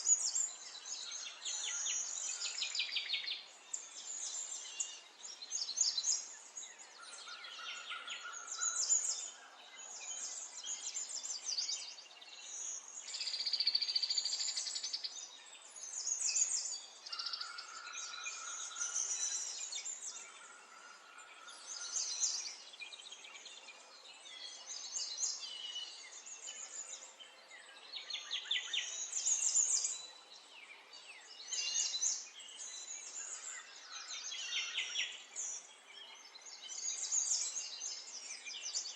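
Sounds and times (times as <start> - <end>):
small birds chirping: 0.0 - 38.9.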